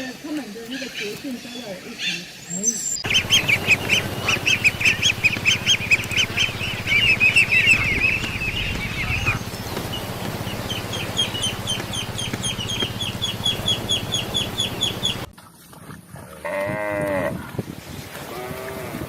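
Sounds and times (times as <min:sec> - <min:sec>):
high bird chirps: 0:00.6 - 0:15.3.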